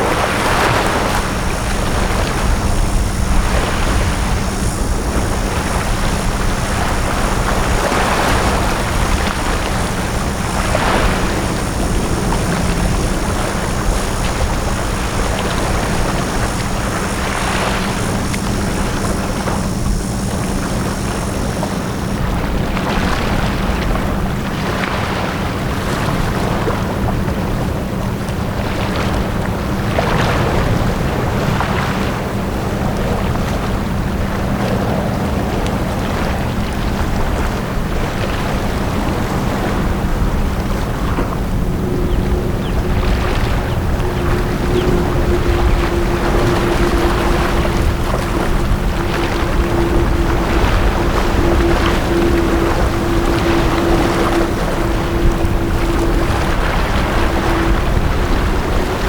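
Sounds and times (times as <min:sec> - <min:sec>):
sea waves washing onto beach: 0:00.0 - 0:59.0
steady low hum: 0:00.0 - 0:59.0
thin high-pitched whine: 0:40.9 - 0:59.0.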